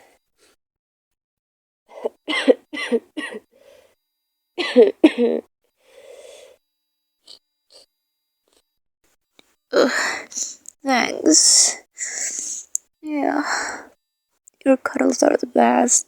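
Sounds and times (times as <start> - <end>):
woman coughing: 2.0 - 3.4, 4.6 - 5.4
faint breath: 3.5 - 4.0, 5.8 - 6.6, 9.8 - 10.7, 11.5 - 12.8, 13.4 - 14.0.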